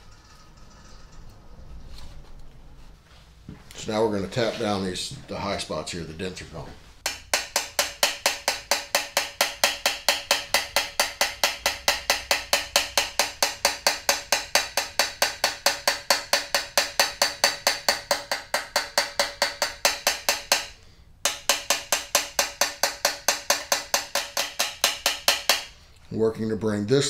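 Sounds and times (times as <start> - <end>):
small hammer tapping on brass: 7.0 - 25.7.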